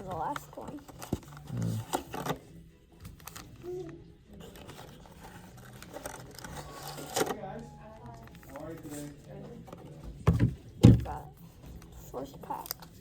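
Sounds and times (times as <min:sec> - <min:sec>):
card packs rustling: 0:00.0 - 0:13.0
packaging rustling and tearing: 0:03.1 - 0:07.5.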